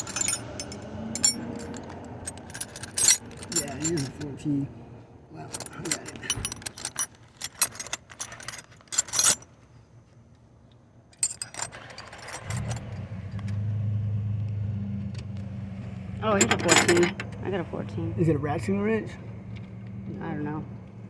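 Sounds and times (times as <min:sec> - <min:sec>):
metal wrenches clinking: 0:00.0 - 0:04.6, 0:05.4 - 0:09.5, 0:11.2 - 0:13.6, 0:16.2 - 0:17.4
low engine-like hum: 0:00.0 - 0:21.0.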